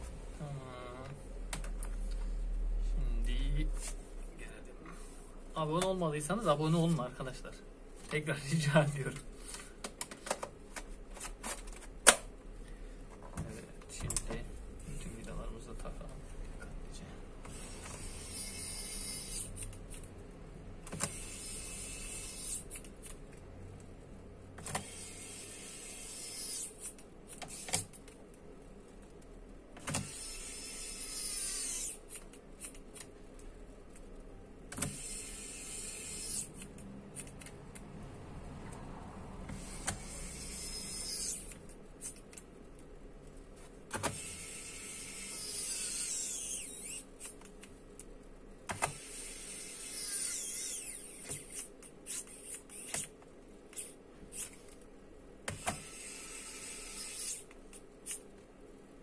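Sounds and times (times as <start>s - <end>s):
electric screwdriver whirring: 17.5s - 19.6s, 20.9s - 22.7s, 24.6s - 27.9s, 29.8s - 32.2s, 34.8s - 36.7s, 39.5s - 41.5s, 44.0s - 47.3s, 48.7s - 53.1s, 55.5s - 57.5s.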